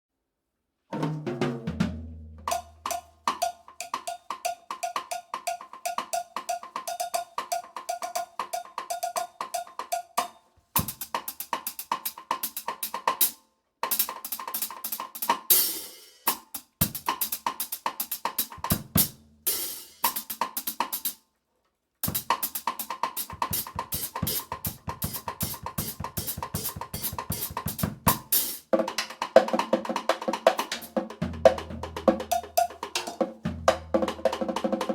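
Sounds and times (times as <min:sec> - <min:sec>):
cowbell clanking: 0:02.6 - 0:10.4
drum kit strikes: 0:23.2 - 0:28.6.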